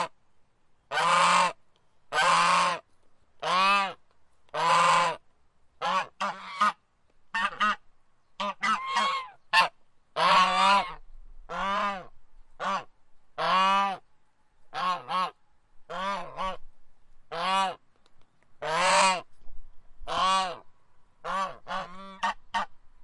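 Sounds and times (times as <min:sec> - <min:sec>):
goose honking: 0:00.9 - 0:02.8, 0:03.4 - 0:05.2, 0:05.8 - 0:07.8, 0:08.4 - 0:14.0, 0:14.7 - 0:16.6, 0:17.3 - 0:17.8, 0:18.6 - 0:19.2, 0:20.1 - 0:20.6, 0:21.2 - 0:22.7.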